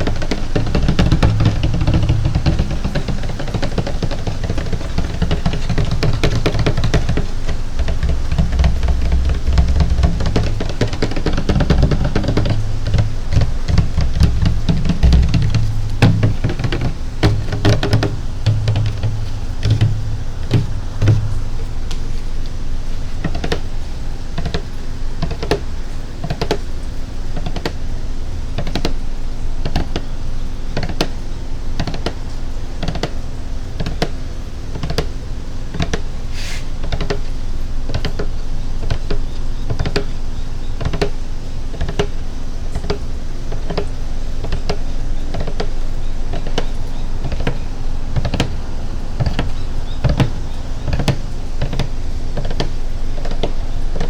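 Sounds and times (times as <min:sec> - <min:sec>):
low background rumble: 0:00.0 - 0:24.3
tapping on water container: 0:00.0 - 0:54.0.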